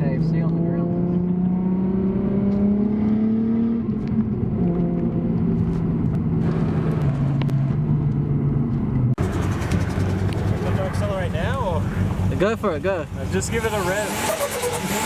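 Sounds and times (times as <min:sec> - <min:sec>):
car engine pulling under load: 0:05.0 - 0:15.0.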